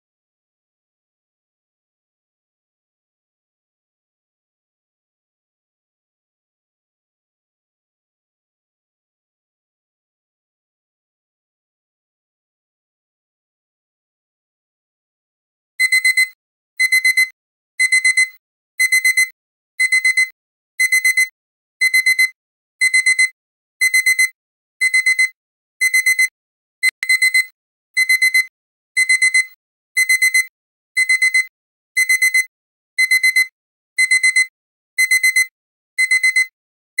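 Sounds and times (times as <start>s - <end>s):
alarm clock beeping: 15.8s - 36.5s.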